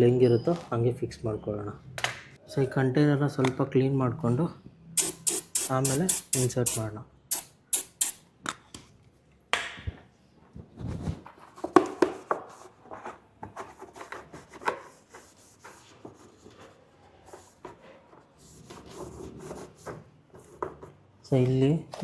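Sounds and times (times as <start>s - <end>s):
hand wiping plastic: 5.0s - 8.1s.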